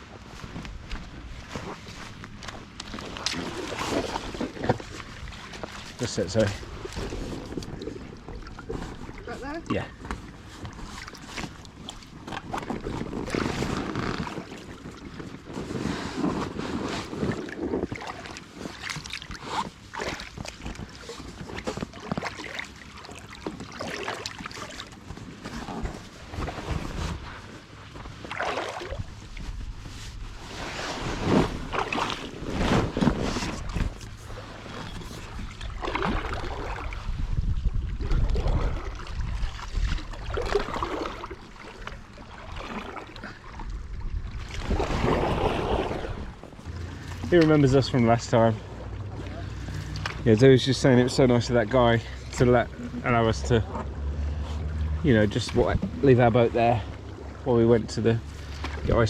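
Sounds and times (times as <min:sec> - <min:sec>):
paddle splashing in water: 0:01.2 - 0:59.0
wind on microphone: 0:28.9 - 0:40.7, 0:43.6 - 0:46.8.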